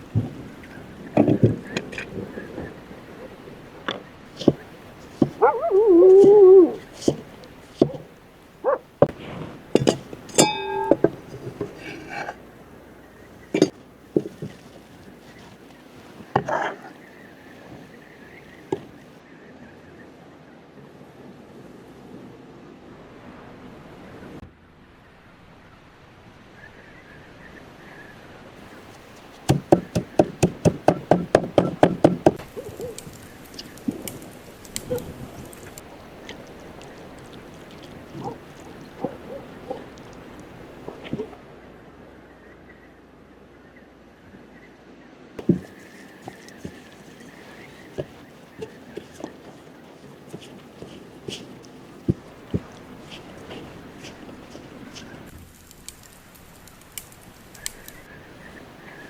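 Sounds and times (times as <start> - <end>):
utensils and dishes clinking: 9.7 - 12.4
sharp knocks: 28.8 - 33.2.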